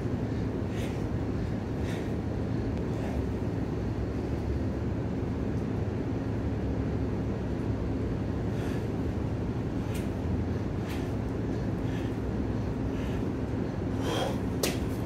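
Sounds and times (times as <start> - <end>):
low mechanical hum: 0.0 - 15.0
short puffs of breath: 0.6 - 2.2, 12.9 - 14.6.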